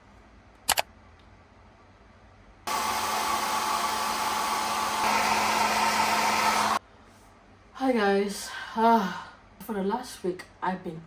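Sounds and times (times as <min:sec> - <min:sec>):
electric appliance motor running: 0:02.7 - 0:06.8.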